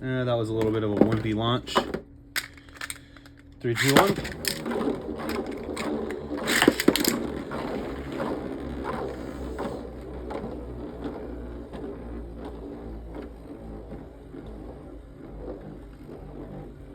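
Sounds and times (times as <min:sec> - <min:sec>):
spinning tops whirring and clashing: 0:01.7 - 0:08.2.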